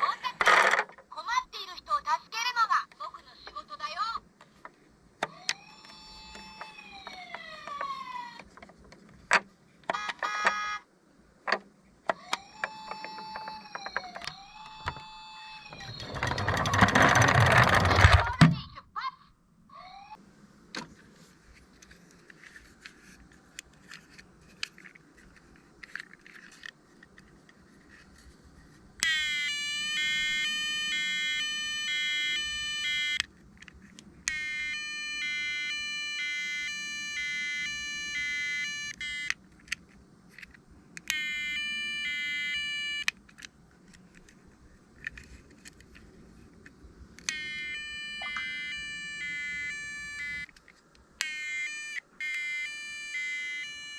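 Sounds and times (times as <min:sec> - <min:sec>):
toy car electronic siren: 0:05.3 - 0:08.5, 0:09.9 - 0:10.8, 0:12.1 - 0:18.3, 0:29.0 - 0:33.2, 0:34.2 - 0:39.4, 0:41.1 - 0:43.2, 0:47.2 - 0:50.6, 0:51.2 - 0:53.9
faint toy handling clicks: 0:20.8 - 0:29.2, 0:33.2 - 0:34.4, 0:38.9 - 0:41.2, 0:43.0 - 0:47.4, 0:49.8 - 0:51.4.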